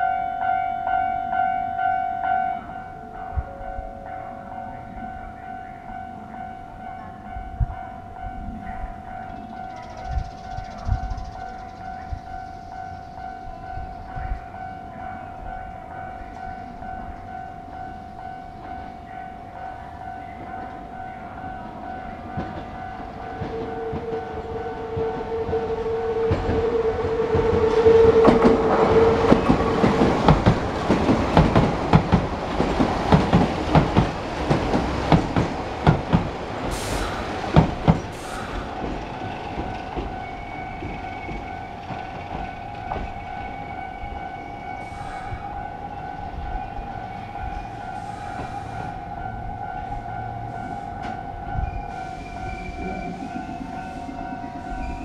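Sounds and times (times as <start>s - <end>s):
level crossing alarm ringing: 0.0s - 55.0s
train wheels clacking over rail joints: 21.7s - 45.0s.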